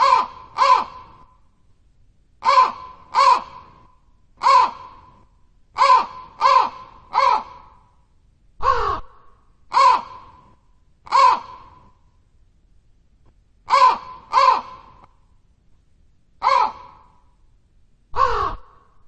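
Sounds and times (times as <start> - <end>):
crow cawing: 0.0 - 1.3, 2.4 - 5.2, 5.8 - 7.9, 8.6 - 10.5, 11.1 - 11.9, 13.7 - 15.1, 16.4 - 17.2, 18.2 - 19.0.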